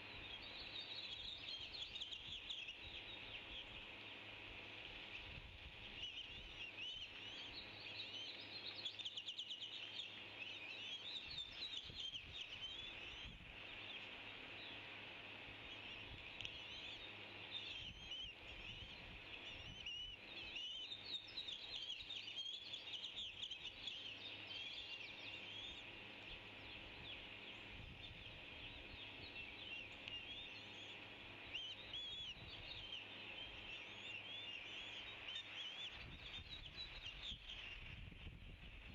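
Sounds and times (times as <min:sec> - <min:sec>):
steady hiss: 0:00.0 - 0:23.0.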